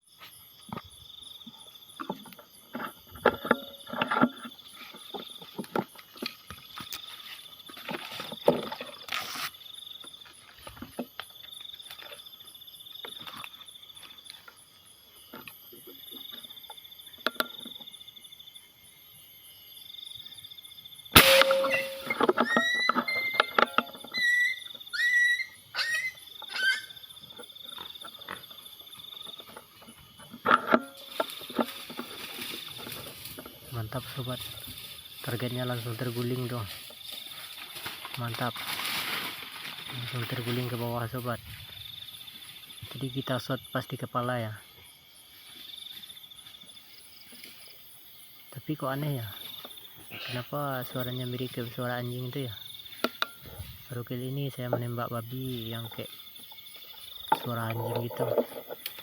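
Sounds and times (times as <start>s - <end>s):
rustling in undergrowth: 3.8s - 14.6s, 31.0s - 43.0s
gunshot: 21.2s - 22.1s
pig yelping cries: 22.0s - 23.5s, 24.2s - 27.0s.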